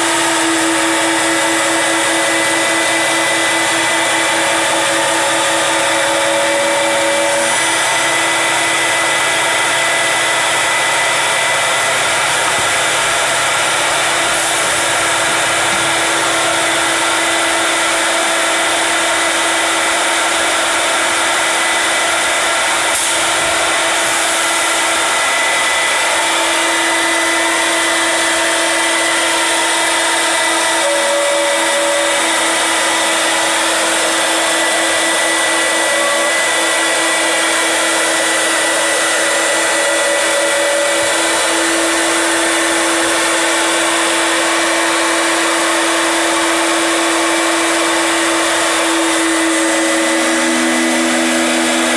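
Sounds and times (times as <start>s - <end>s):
router spindle cutting wood: 0.0s - 51.9s.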